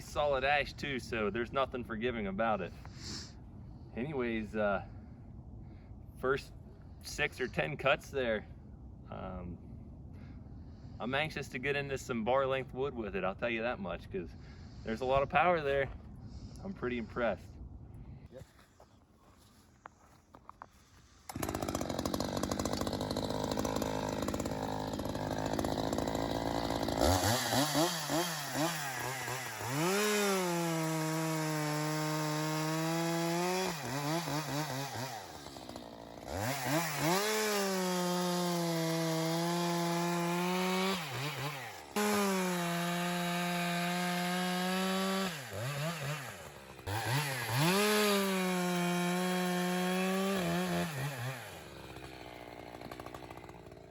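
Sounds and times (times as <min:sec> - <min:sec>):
chainsaw cutting wood: 0:21.0 - 0:53.9.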